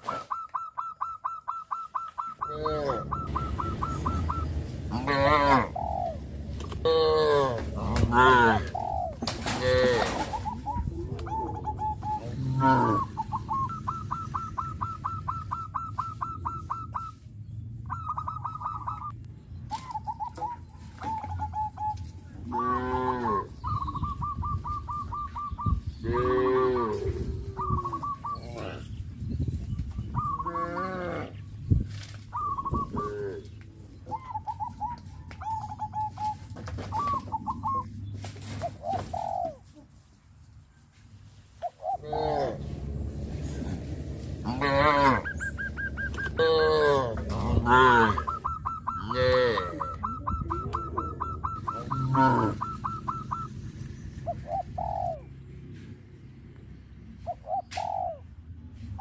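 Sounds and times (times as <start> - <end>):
bird chattering: 0.0 - 5.1, 10.2 - 17.2, 17.8 - 22.6, 45.2 - 55.2
cattle mooing: 2.5 - 4.3, 4.9 - 5.8, 6.8 - 8.8, 12.2 - 13.1, 22.4 - 23.5, 26.0 - 27.3, 30.4 - 31.3, 42.0 - 43.7, 44.4 - 45.4, 46.2 - 48.4, 49.0 - 49.9, 51.9 - 52.6.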